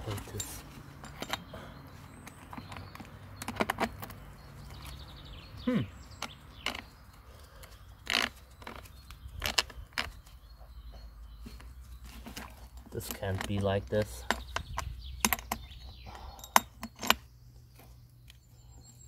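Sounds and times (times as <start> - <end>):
clicks and knocks of parts handled: 0.0 - 5.0, 11.5 - 18.4.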